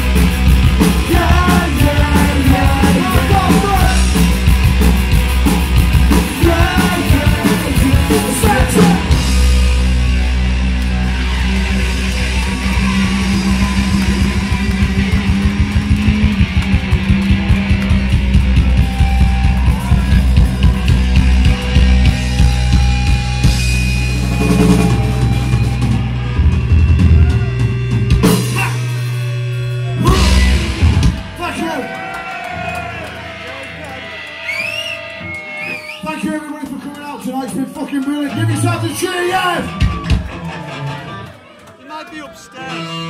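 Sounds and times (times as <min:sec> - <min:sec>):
punk rock band playing live: 0:00.0 - 0:37.7, 0:38.4 - 0:41.4.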